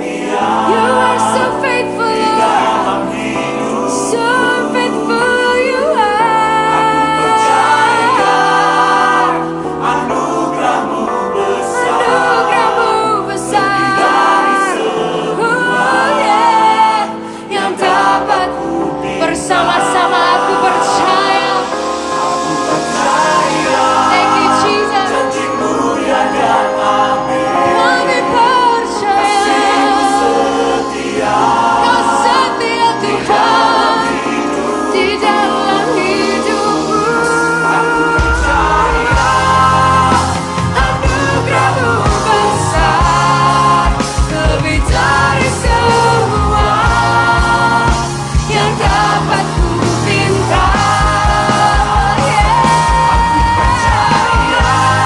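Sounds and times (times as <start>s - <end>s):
choir singing worship song: 0.0s - 55.0s
instrumental accompaniment: 0.0s - 55.0s
steady bass line: 36.2s - 55.0s.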